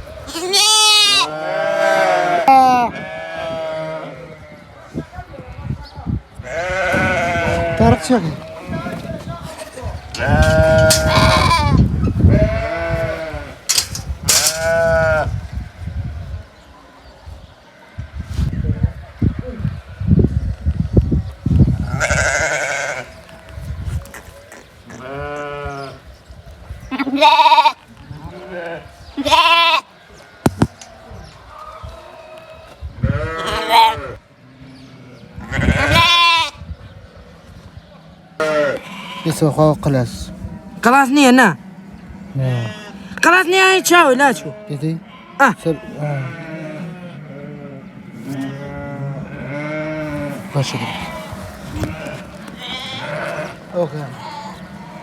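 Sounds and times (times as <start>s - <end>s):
sheep bleating: 0.2s - 4.6s, 6.4s - 15.4s, 21.8s - 23.2s, 24.9s - 26.0s, 26.9s - 29.9s, 32.1s - 34.2s, 34.8s - 36.6s, 38.4s - 39.4s, 43.5s - 55.0s.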